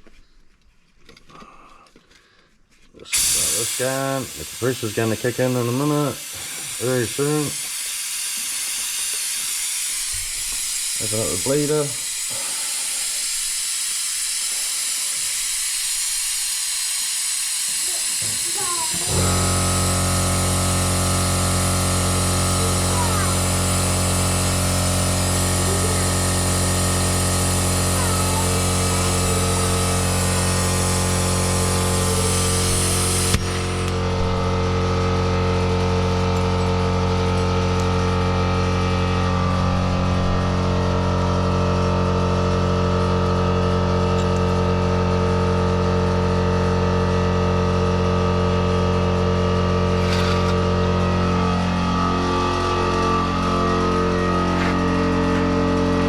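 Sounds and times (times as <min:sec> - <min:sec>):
air compressor running: 0:01.1 - 0:56.0
compressed air hissing: 0:03.1 - 0:41.3, 0:49.6 - 0:56.0.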